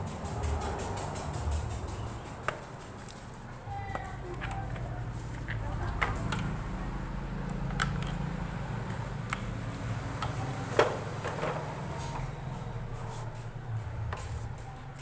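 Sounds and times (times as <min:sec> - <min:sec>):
clicks and knocks of tools: 0:07.4 - 0:09.5.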